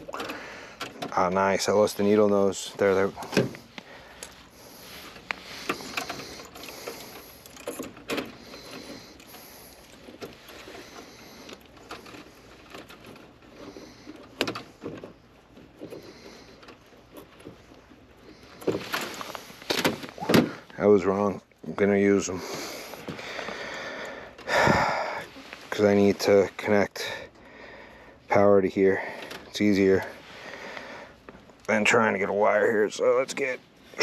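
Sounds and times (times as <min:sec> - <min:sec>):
rustling: 0:01.2 - 0:21.8, 0:25.2 - 0:26.6.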